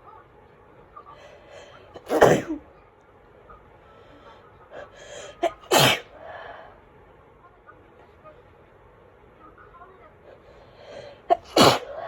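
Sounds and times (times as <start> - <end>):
person sneezing: 2.0 - 2.6, 5.4 - 6.1, 11.3 - 12.0.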